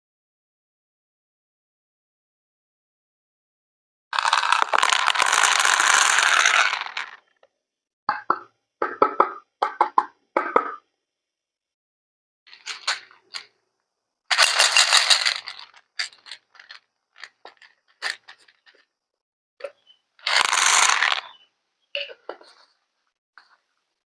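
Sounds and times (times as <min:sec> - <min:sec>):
clicks and knocks of small objects: 0:04.2 - 0:07.5, 0:12.5 - 0:13.6, 0:14.3 - 0:18.9, 0:20.2 - 0:21.4
scraping noises: 0:22.0 - 0:22.8.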